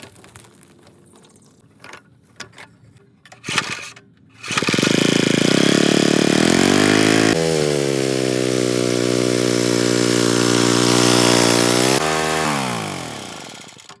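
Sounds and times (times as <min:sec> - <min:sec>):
small gas engine running: 0:03.4 - 0:14.0.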